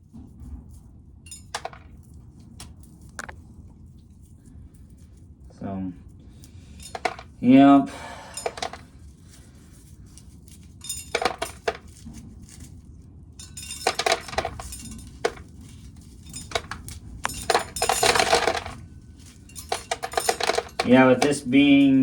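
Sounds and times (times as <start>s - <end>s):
corn kernels rattling: 1.4s - 1.8s, 6.8s - 7.3s, 8.4s - 8.8s, 13.5s - 22.0s.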